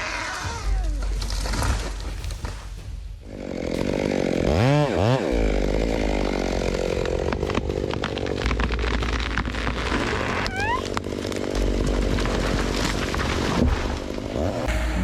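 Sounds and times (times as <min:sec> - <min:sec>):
chainsaw running: 0:03.2 - 0:15.0.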